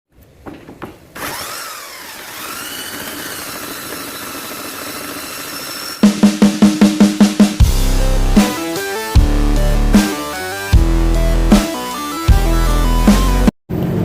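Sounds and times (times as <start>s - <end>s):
belt sander motor running: 1.2s - 6.2s
drum beat: 6.0s - 13.4s.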